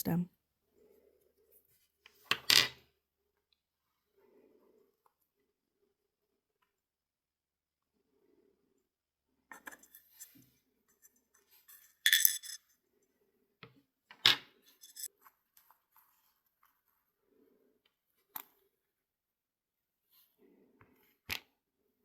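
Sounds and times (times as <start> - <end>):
small metal clicks and scrapes: 14.8 - 15.1.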